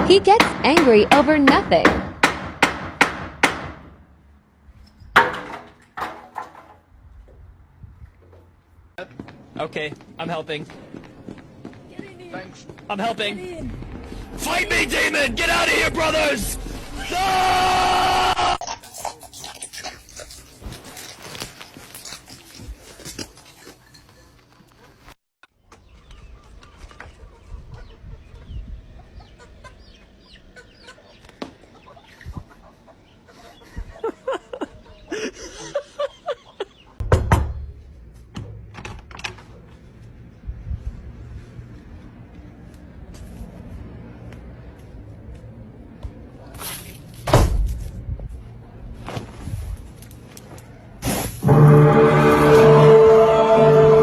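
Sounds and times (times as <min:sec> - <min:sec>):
sharp knocks or bangs: 0:00.0 - 0:04.0
birds chirping and clucking: 0:25.7 - 0:37.0.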